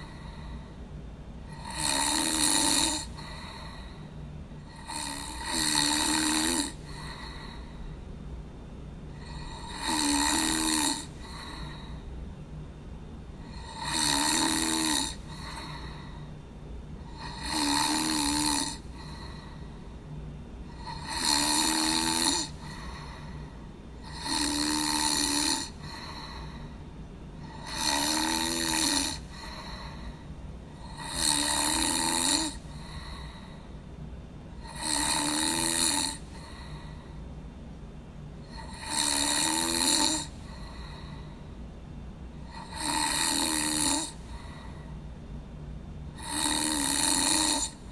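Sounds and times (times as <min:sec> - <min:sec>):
person snoring: 0:00.0 - 0:00.7, 0:01.5 - 0:07.9, 0:09.2 - 0:12.1, 0:13.4 - 0:16.3, 0:17.0 - 0:19.8, 0:20.7 - 0:26.8, 0:27.4 - 0:33.6, 0:34.6 - 0:37.1, 0:38.4 - 0:41.4, 0:42.4 - 0:44.8, 0:46.2 - 0:47.9
low steady hum: 0:00.0 - 0:47.9.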